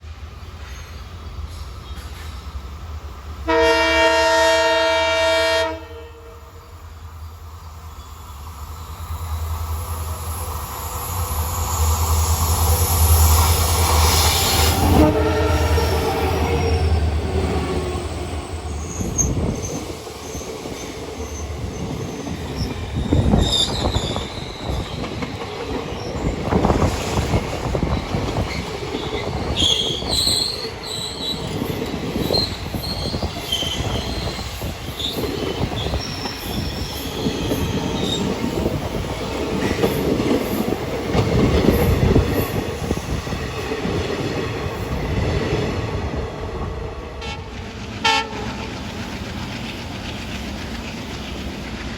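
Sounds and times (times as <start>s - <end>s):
train horn blast: 3.4s - 6.6s, 14.8s - 16.2s, 47.2s - 48.7s.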